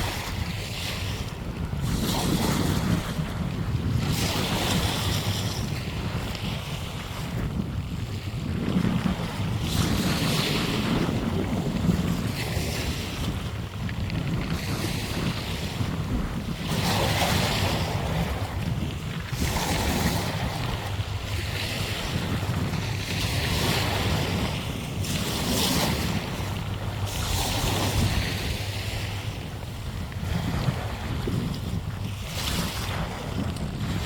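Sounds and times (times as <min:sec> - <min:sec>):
sea waves breaking on shore: 0:00.0 - 0:34.0
wind rumble on microphone: 0:00.0 - 0:34.0.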